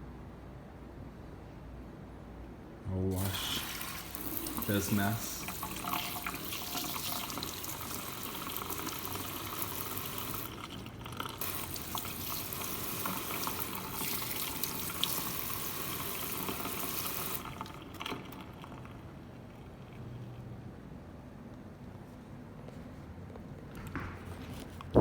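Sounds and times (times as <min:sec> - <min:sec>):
tap water running into sink: 0:03.2 - 0:19.0.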